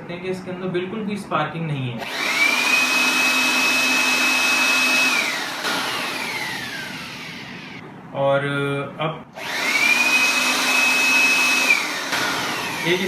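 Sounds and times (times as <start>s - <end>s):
electric air blower whine: 2.0s - 7.8s, 9.4s - 13.0s.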